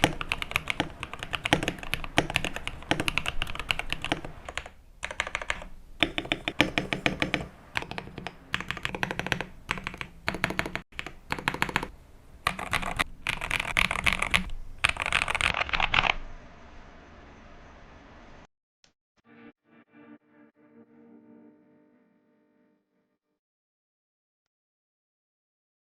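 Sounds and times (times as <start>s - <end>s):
mechanical keyboard typing: 0.0s - 16.2s.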